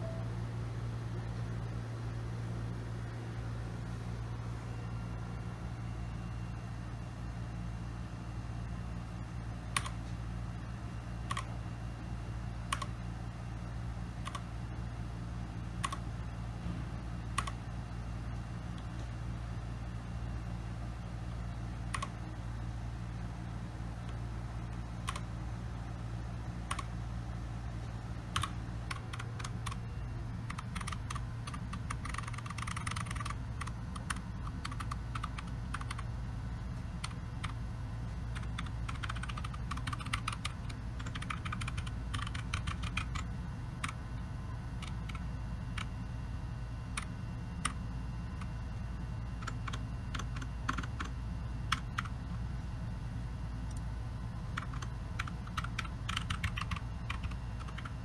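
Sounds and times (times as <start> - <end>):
low hum: 0.0 - 58.0
mechanical keyboard typing: 9.7 - 10.0, 11.3 - 11.5, 12.7 - 13.0, 14.2 - 14.5, 15.8 - 16.0, 17.4 - 17.6, 21.8 - 22.2, 25.0 - 25.3, 26.7 - 26.9, 28.3 - 29.8, 30.4 - 36.1, 37.0 - 37.6, 38.3 - 44.0, 44.8 - 45.9, 46.9 - 47.8, 49.4 - 51.1, 51.7 - 52.2, 54.5 - 58.0.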